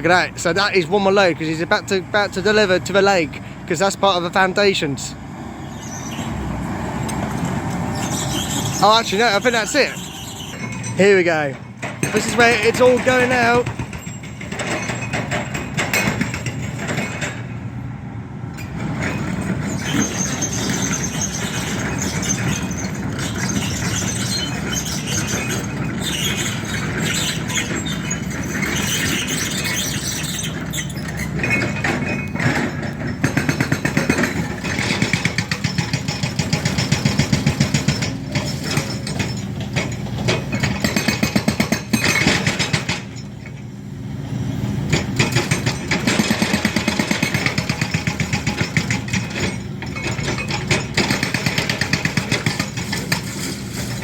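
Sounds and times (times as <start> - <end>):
diesel machinery engine: 0.0 - 54.0
high squeal: 5.6 - 6.4, 7.9 - 11.4, 19.7 - 32.3.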